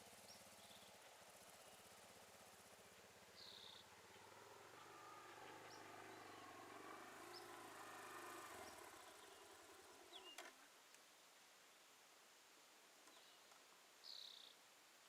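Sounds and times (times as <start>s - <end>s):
faint engine hum: 0.0s - 10.8s
bird chirps: 3.4s - 10.5s.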